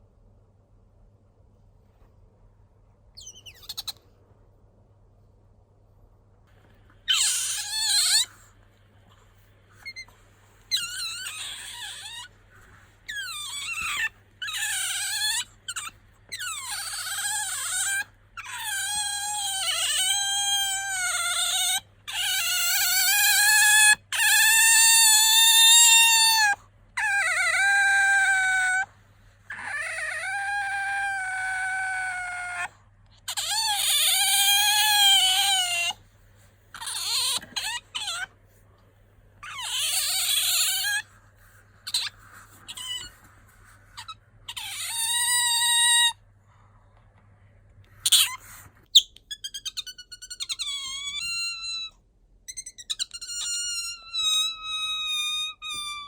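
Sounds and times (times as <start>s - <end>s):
otter squeaking: 41.8s - 43.3s.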